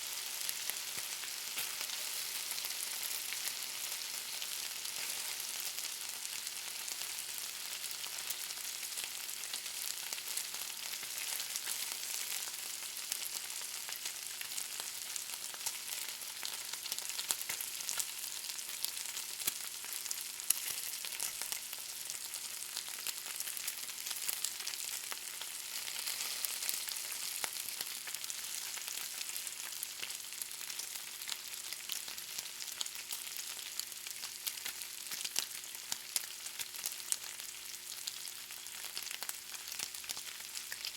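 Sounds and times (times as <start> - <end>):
bacon sizzling in a pan: 0.0 - 40.9.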